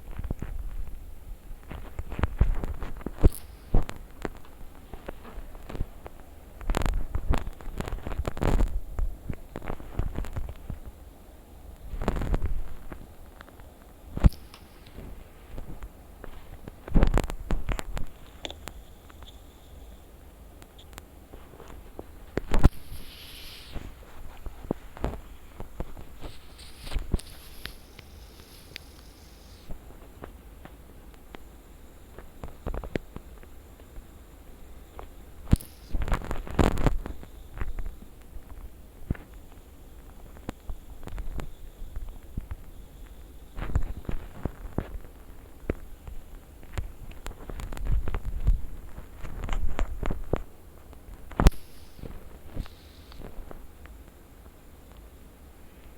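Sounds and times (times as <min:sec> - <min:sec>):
short hiss: 0:03.2 - 0:03.9, 0:14.2 - 0:15.3, 0:22.5 - 0:29.8, 0:51.4 - 0:53.4.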